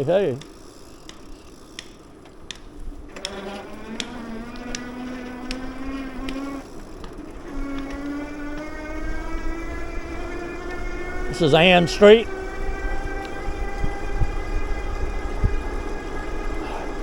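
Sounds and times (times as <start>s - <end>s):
small engine droning: 0.0s - 17.0s
faint clicks: 0.4s - 8.7s, 13.2s - 13.4s.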